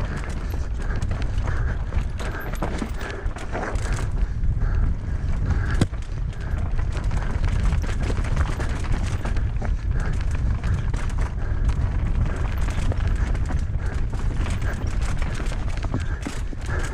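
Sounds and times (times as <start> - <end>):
bike rattling over rocks: 0.0 - 16.9
wind rumble on microphone: 0.0 - 16.9.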